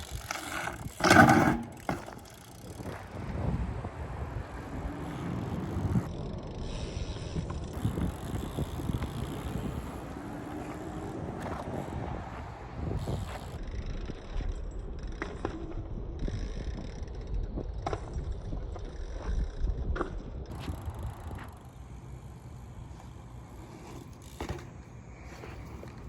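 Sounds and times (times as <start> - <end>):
bike knocks and clanks: 0.0 - 3.1, 23.8 - 26.0
bike tyres rolling rumble: 0.0 - 26.0
wind on microphone: 2.6 - 13.6.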